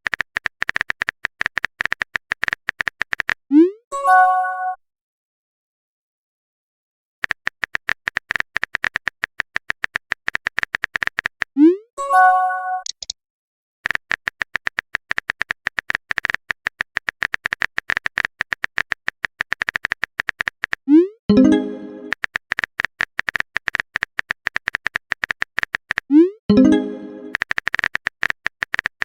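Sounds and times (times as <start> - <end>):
rapid typing clicks: 0.0 - 3.4, 7.2 - 11.6, 13.8 - 20.9, 22.0 - 26.1, 26.9 - 29.0
notification chime: 21.3 - 22.1, 26.5 - 27.3.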